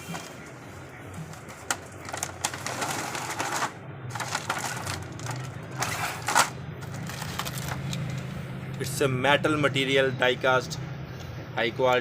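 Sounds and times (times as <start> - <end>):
packaging crinkling: 1.3 - 8.2.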